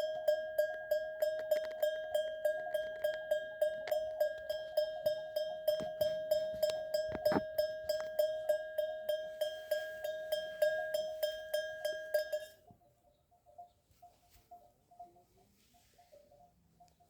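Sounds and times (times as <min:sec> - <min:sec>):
goat bell ringing: 0:00.0 - 0:12.7.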